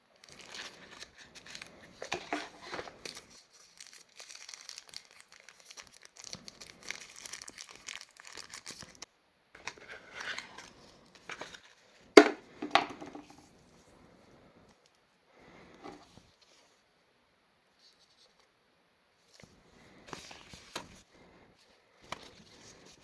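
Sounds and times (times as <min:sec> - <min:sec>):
plastic wrap and paper crinkling: 0:00.2 - 0:11.9.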